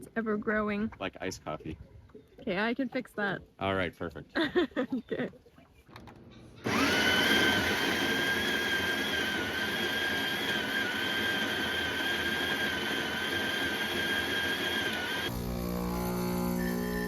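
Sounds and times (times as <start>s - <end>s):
machine running with high whine: 6.6s - 17.0s.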